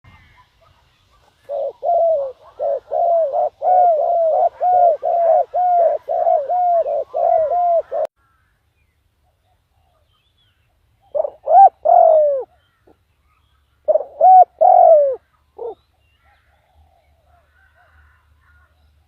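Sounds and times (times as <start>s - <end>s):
dove cooing: 1.1s - 8.1s, 11.1s - 12.8s, 13.8s - 18.7s.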